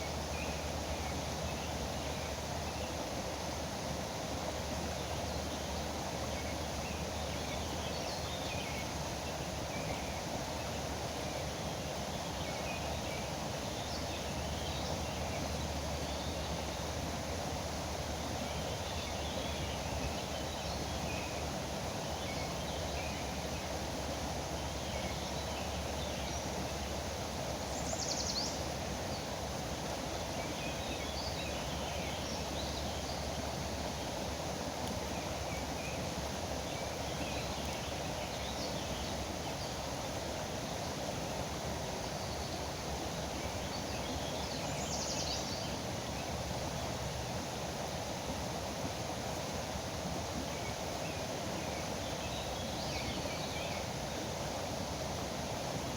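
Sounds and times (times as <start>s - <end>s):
foaming river rushing: 8.6s - 55.9s.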